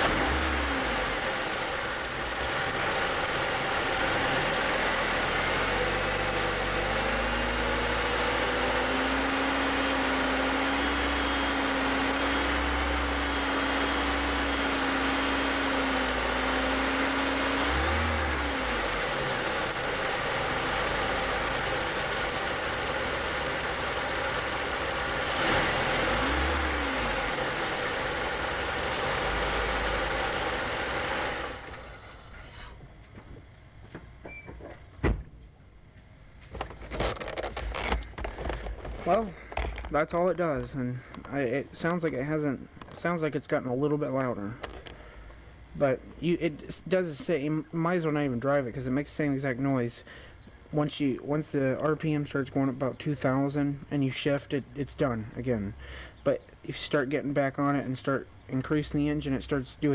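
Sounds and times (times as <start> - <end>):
car engine revving: 0.0 - 32.5.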